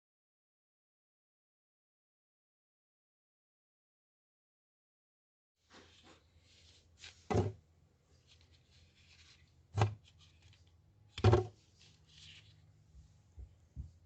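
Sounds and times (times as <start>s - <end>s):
soft rustling: 5.6s - 10.8s, 11.5s - 14.0s.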